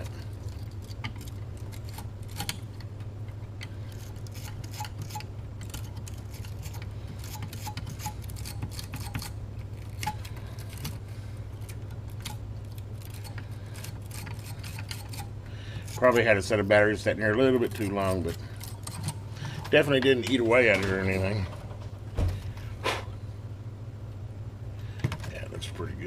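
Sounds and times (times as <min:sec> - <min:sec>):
steady low hum: 0:00.0 - 0:26.0
wire brush scrubbing metal: 0:03.7 - 0:10.9, 0:12.2 - 0:20.5.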